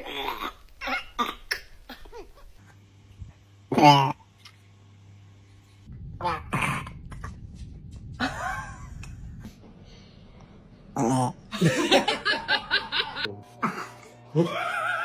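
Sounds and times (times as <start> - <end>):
person laughing: 8.2 - 9.2, 11.5 - 15.0.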